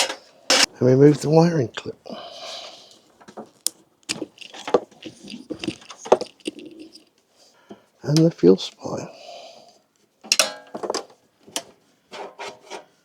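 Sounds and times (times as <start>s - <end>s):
hands rustling: 0.0s - 7.7s.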